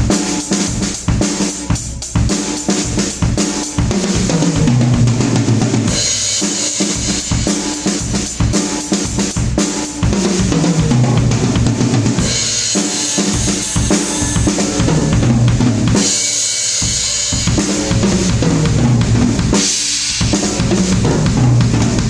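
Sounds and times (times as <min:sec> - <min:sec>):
drum kit playing a groove: 0:00.0 - 0:22.0
bass line: 0:04.2 - 0:05.7, 0:10.8 - 0:12.5, 0:13.4 - 0:16.1, 0:17.4 - 0:19.6, 0:20.4 - 0:22.0.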